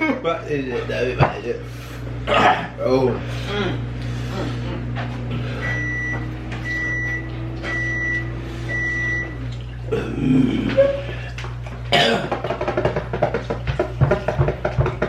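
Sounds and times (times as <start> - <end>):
low appliance hum: 0.0 - 15.0
person coughing and clearing throat: 2.3 - 2.8, 11.9 - 12.6.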